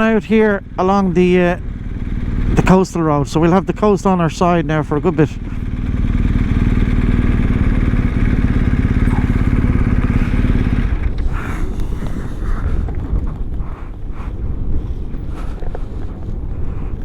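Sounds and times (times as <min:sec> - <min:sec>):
motorcycle engine pulling: 0:00.0 - 0:17.0
wind and road noise: 0:00.0 - 0:17.0.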